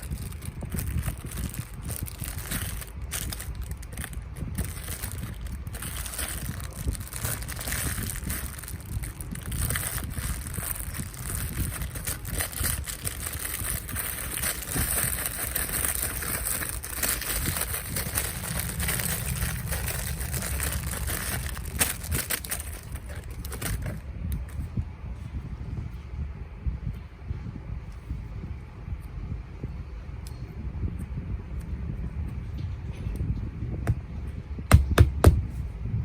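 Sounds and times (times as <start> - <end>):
plastic packaging crinkling: 0.0 - 24.6.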